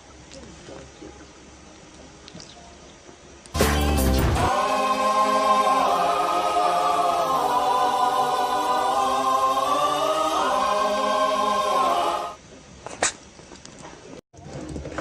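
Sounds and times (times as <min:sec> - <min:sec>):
choir holding long chords: 0:03.6 - 0:12.4.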